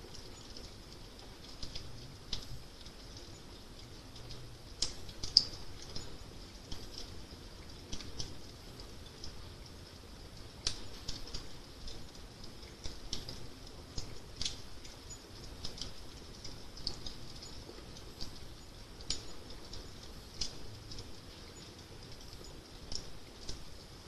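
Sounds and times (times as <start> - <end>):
fire crackling: 0.0 - 24.0.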